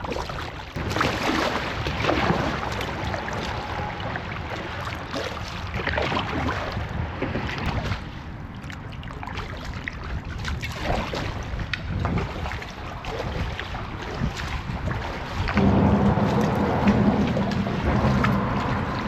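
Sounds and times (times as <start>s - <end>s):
paddle splashing in water: 0.0s - 19.0s
wind rumbling on microphone: 0.0s - 19.0s.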